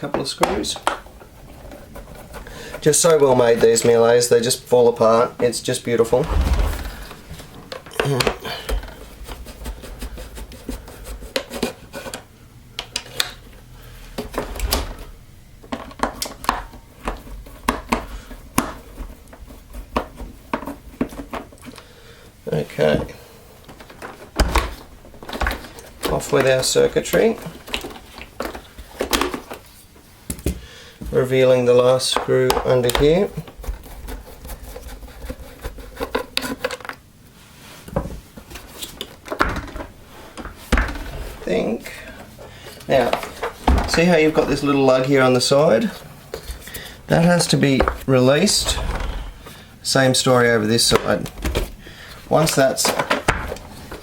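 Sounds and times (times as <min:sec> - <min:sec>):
plastic parts clicking and knocking: 0:00.0 - 0:02.9, 0:15.6 - 0:21.8, 0:23.6 - 0:29.6, 0:32.1 - 0:37.0, 0:38.0 - 0:44.6, 0:50.8 - 0:54.0.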